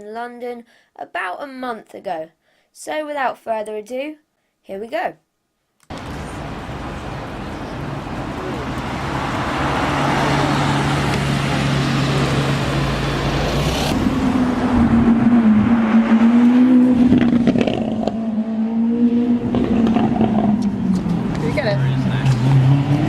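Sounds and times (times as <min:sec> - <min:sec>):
sports car engine: 0:05.9 - 0:23.0
street traffic: 0:05.9 - 0:23.0.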